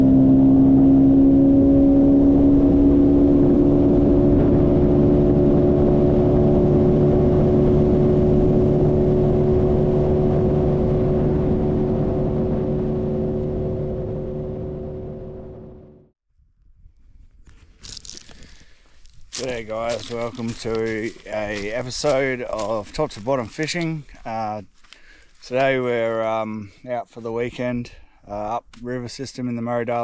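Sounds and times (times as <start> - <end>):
engine running steadily: 0.0 - 16.1.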